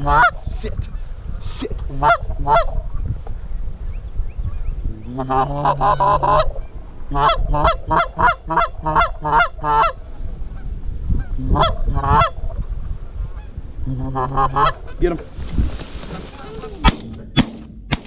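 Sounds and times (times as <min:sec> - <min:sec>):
low wind rumble: 0:00.0 - 0:18.0
goose honking: 0:05.1 - 0:12.4, 0:13.3 - 0:15.1.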